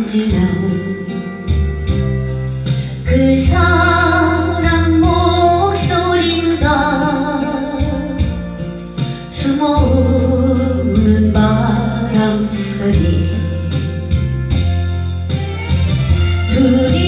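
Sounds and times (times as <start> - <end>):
woman singing with vibrato: 0.0 - 1.9, 3.1 - 8.4, 9.3 - 14.0, 16.5 - 17.0
instrumental backing track: 0.0 - 17.0.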